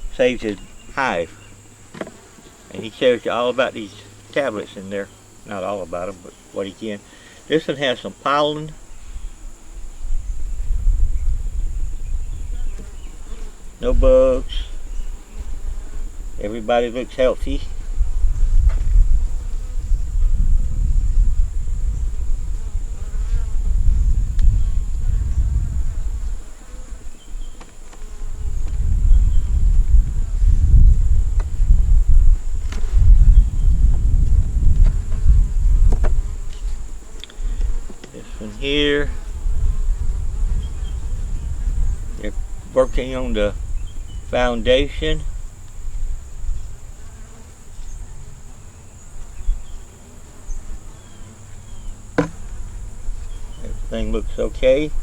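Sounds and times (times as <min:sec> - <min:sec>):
honeybees buzzing: 0:00.0 - 0:55.0
sharp knock: 0:52.2 - 0:52.6.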